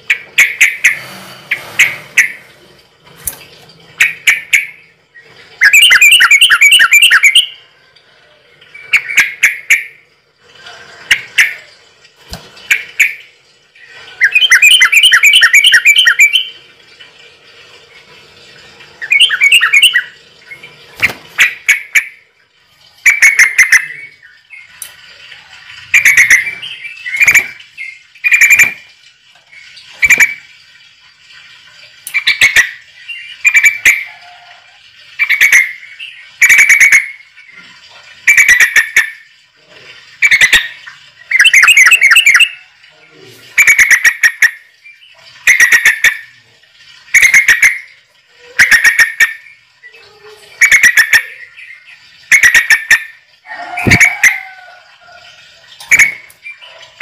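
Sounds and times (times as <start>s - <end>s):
bird trilling: 5.6s - 7.6s, 14.2s - 16.6s, 19.0s - 20.2s, 26.0s - 28.8s, 41.3s - 42.6s, 50.6s - 54.8s.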